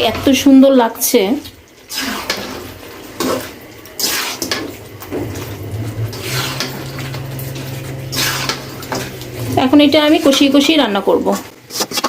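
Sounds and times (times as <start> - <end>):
chicken frying: 0.0 - 12.0
spatula scraping a pan: 1.8 - 12.0
steady low hum: 2.6 - 11.6.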